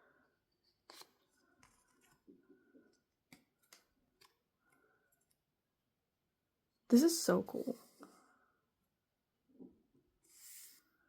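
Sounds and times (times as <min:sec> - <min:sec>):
paper and card rustling: 0:00.8 - 0:02.2.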